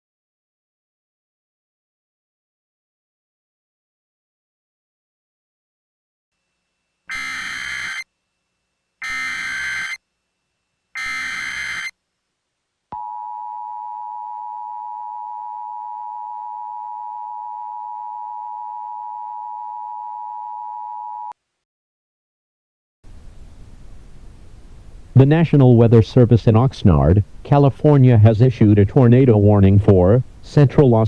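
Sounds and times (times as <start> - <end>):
digital data noise bursts: 7.1 - 8.0, 9.0 - 10.0, 11.0 - 11.9
two-tone attention signal: 7.1 - 8.0, 9.0 - 10.0, 11.0 - 11.9.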